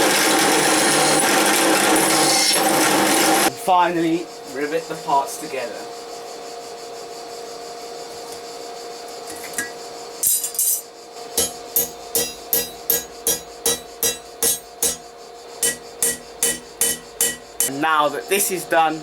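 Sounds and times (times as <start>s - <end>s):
steady hum: 11.2s - 19.0s
hammer ringing on hot rivet: 11.4s - 17.8s.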